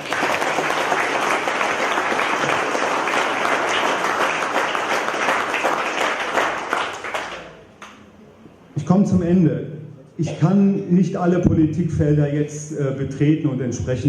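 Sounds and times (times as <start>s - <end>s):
audience applauding: 0.0s - 7.6s.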